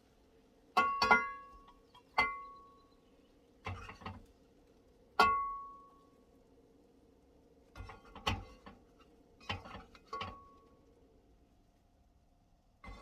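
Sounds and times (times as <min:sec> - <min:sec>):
metal utensils clattering on pan: 0:09.4 - 0:10.5.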